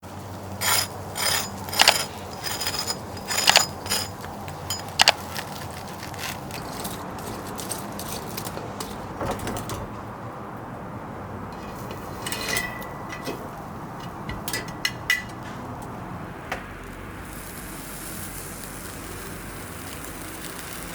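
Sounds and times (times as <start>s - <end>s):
utensils scraping and handling: 0.6s - 9.1s, 11.6s - 15.5s
metal utensils clinking: 0.6s - 9.7s, 11.6s - 15.4s.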